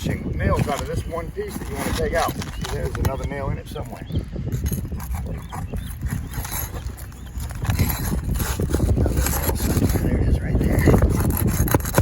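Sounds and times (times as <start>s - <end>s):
wind rumble on microphone: 0.0s - 12.0s
steel bar scraping under shingles: 0.5s - 3.3s, 4.5s - 12.0s.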